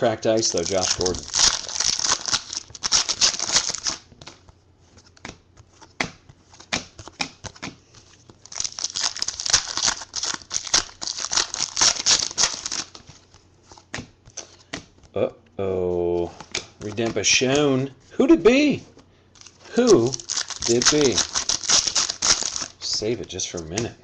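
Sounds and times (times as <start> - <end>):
card pack wrappers crinkling: 0.2 - 4.1, 8.3 - 13.4, 19.4 - 23.9
cards clicking and sliding: 0.5 - 8.1, 19.4 - 23.9.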